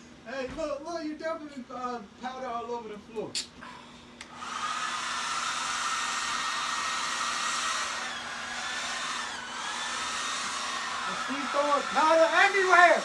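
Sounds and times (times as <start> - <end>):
hair dryer running: 4.2 - 13.0.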